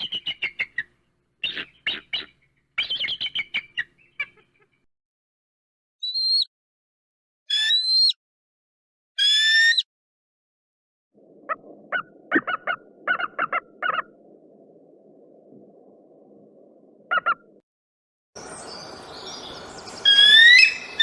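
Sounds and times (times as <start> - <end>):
background hiss: 18.4 - 21.0
eagle chattering calls: 18.4 - 21.0
eagle screaming calls: 18.4 - 21.0.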